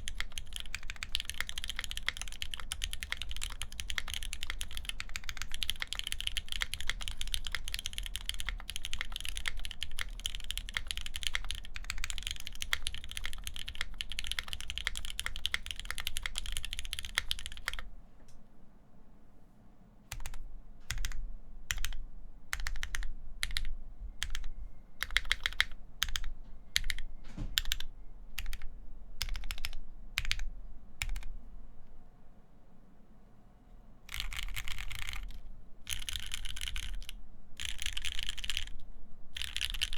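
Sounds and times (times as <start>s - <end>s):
mechanical keyboard typing: 0.0s - 17.9s, 20.1s - 31.4s, 34.1s - 39.9s.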